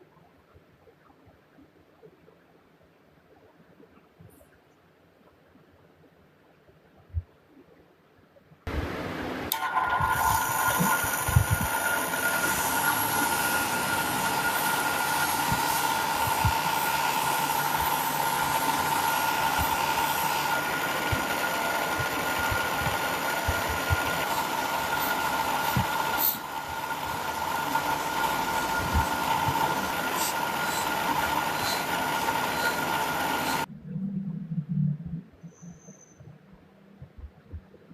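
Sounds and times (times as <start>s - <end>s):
power tool whining: 9.2s - 33.7s.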